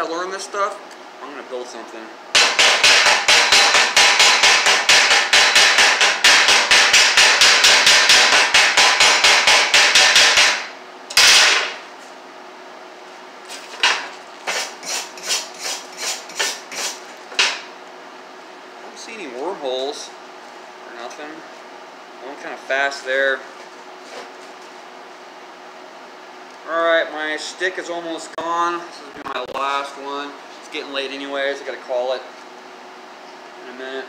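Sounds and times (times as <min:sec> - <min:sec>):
chipping hammer striking metal: 0:02.4 - 0:11.8.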